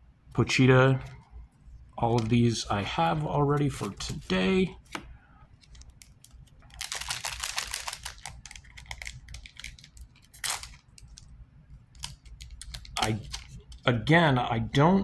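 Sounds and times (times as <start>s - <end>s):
cards rustling and clicking: 2.0s - 14.0s
foil wrapper crinkling: 5.6s - 11.3s, 11.9s - 13.9s.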